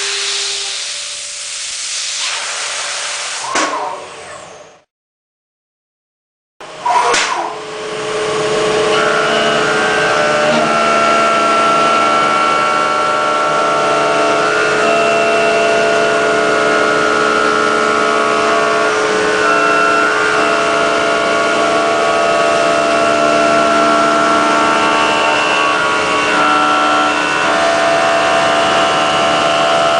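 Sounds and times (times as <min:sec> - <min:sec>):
milling machine whining: 0:06.6 - 0:29.9.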